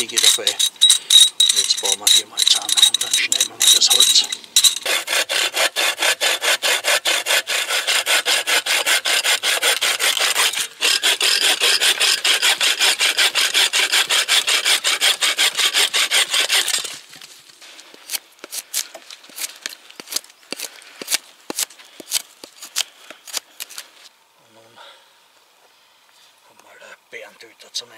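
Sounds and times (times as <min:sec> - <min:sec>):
bow saw cutting branch: 0:01.6 - 0:23.9.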